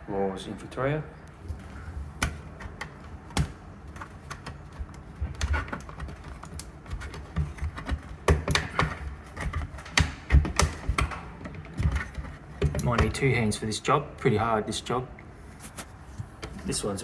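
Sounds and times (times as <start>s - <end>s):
hands handling objects: 1.3s - 13.2s.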